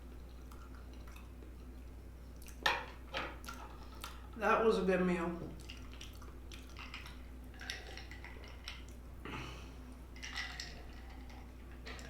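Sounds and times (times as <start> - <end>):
wet chewing and mouth sounds: 0.0 - 2.7, 3.4 - 4.4, 5.6 - 9.0.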